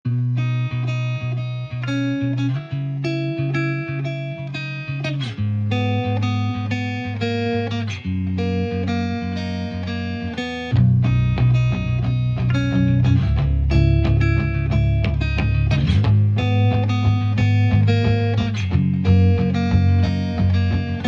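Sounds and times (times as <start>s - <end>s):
plucked guitar melody: 0.1s - 21.0s
bass line: 8.0s - 21.0s.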